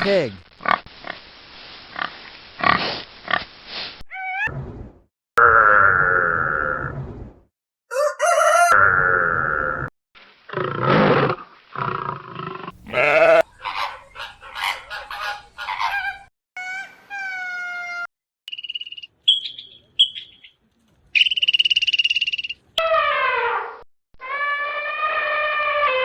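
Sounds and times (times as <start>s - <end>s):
animal calls: 12.7s - 18.1s.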